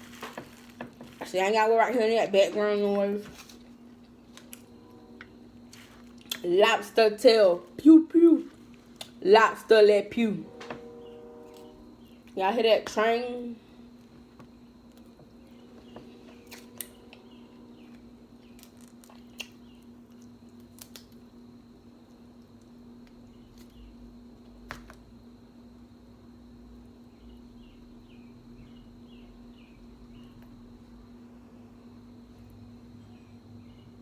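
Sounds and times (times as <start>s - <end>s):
distant train drone: 4.3s - 6.1s, 9.3s - 14.0s, 15.2s - 18.5s.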